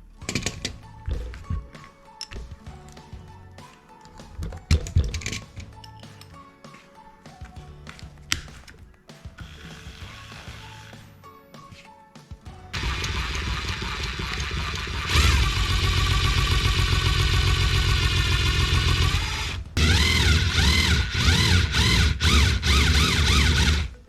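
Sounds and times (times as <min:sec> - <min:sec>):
small electric motor humming: 0:12.8 - 0:24.0.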